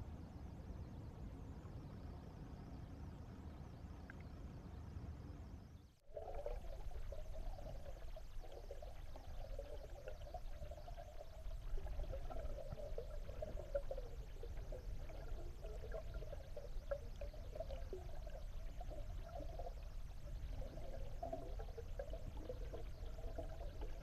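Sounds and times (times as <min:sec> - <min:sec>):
water trickling and gurgling: 0:06.0 - 0:24.0.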